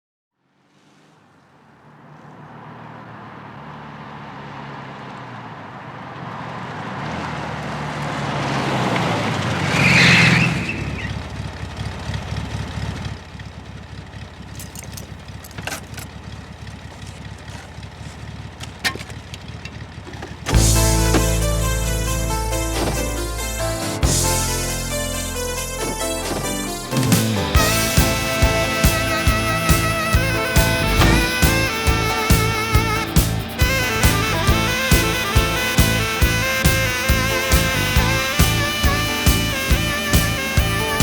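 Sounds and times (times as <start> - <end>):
car engine approaching: 0.4 - 41.0
high squeal: 20.6 - 41.0.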